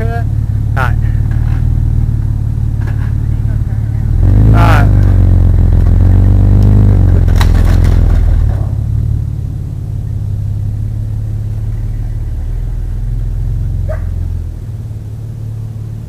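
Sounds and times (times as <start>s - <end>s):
truck engine idling: 0.0s - 16.0s
dog barking: 13.8s - 14.2s.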